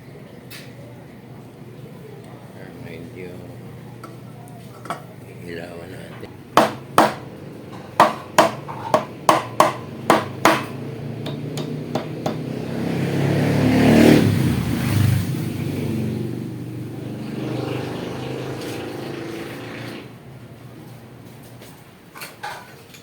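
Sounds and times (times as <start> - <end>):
sharp knocks: 6.6 - 12.5.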